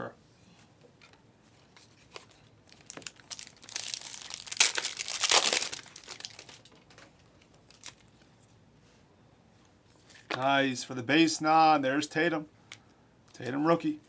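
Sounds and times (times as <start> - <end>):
foil wrapper tearing and crinkling: 2.7 - 7.0, 7.7 - 8.1.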